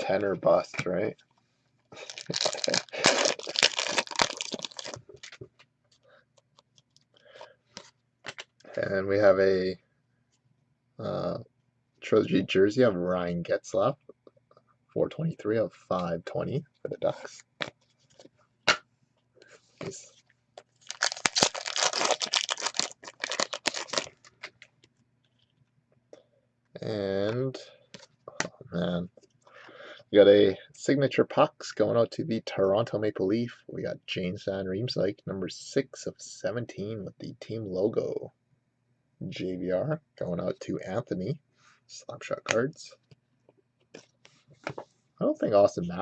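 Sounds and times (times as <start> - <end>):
foil wrapper tearing and crinkling: 2.0 - 5.4, 20.8 - 24.6.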